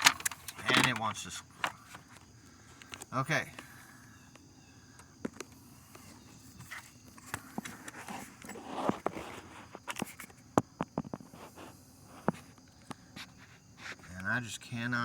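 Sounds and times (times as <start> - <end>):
handling clicks and knocks: 0.0 - 3.7.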